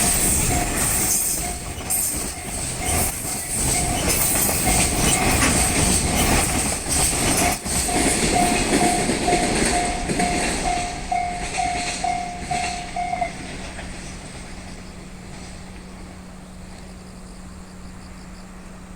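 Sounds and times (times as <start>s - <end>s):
level crossing warning bell: 0.0s - 13.8s
train passing on rails: 0.0s - 18.9s.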